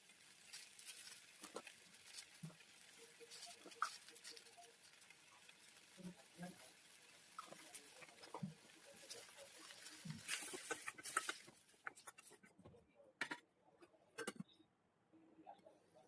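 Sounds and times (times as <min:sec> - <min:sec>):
kitchen utensils clicking: 0:14.2 - 0:14.4.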